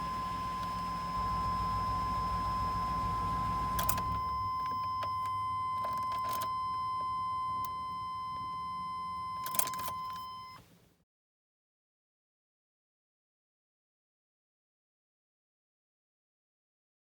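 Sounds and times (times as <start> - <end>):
low engine rumble: 0.0 - 9.9
high-pitched warning tone: 0.0 - 10.6
clicks: 3.6 - 6.6, 9.4 - 10.7.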